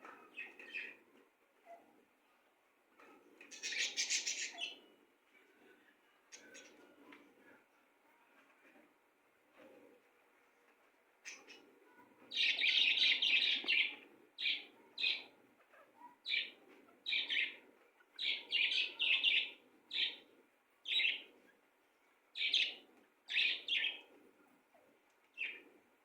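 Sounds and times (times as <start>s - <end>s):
bird chirping: 3.5s - 4.8s, 11.2s - 15.3s, 16.2s - 17.6s, 18.2s - 20.2s, 20.8s - 21.3s, 22.4s - 24.0s.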